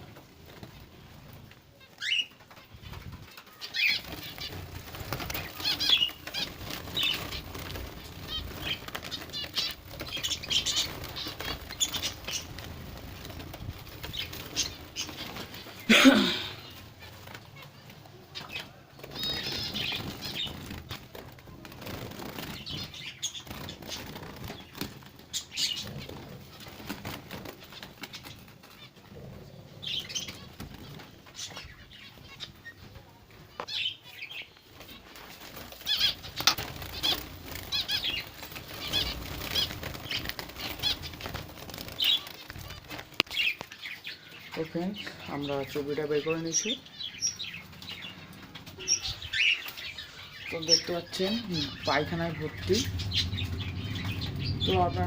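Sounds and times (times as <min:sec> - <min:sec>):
finches flapping wings: 0:00.0 - 0:17.7, 0:18.4 - 0:29.0, 0:34.6 - 0:44.2.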